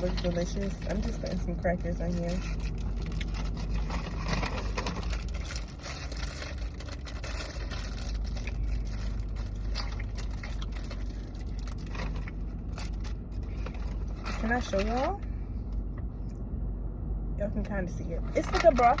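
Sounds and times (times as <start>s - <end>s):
crackers crinkling and crunching: 0.0s - 15.3s
steady low rumble: 0.0s - 19.0s
crackers scraped onto bowl: 2.0s - 15.0s.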